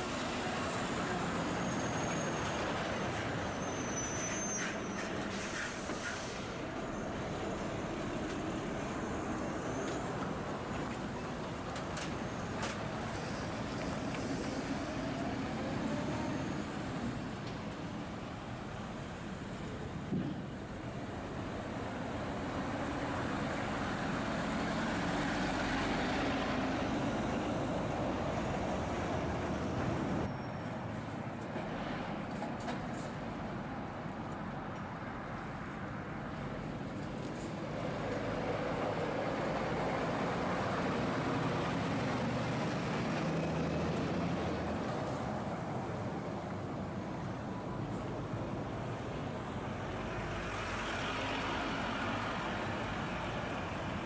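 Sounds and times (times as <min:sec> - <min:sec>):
steady traffic noise: 0:00.0 - 0:54.0
heavy lorry driving past: 0:36.5 - 0:54.0.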